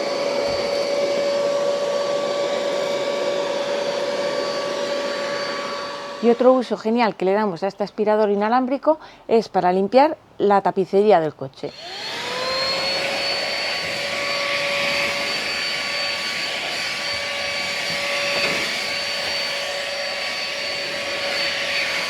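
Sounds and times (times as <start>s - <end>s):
vacuum motor whine: 0.0s - 6.6s, 11.7s - 22.0s.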